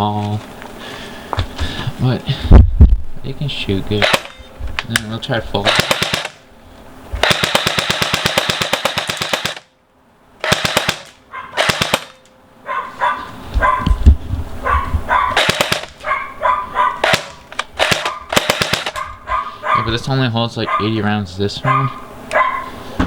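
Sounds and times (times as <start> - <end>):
airsoft gun firing bursts: 4.0 - 4.4, 5.6 - 6.4, 7.2 - 9.7, 10.4 - 12.3, 15.3 - 16.0, 17.0 - 19.1.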